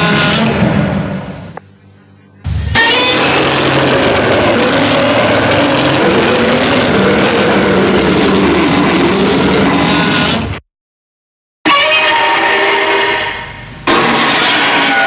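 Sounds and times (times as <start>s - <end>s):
monster roar: 2.7s - 10.6s, 13.9s - 15.0s.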